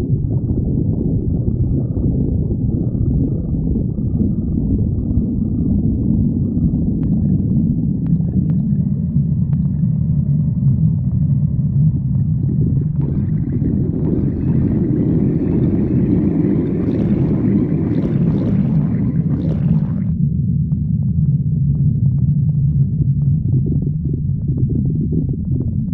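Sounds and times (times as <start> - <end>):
stomach growling: 0.0 - 20.2, 21.7 - 25.9.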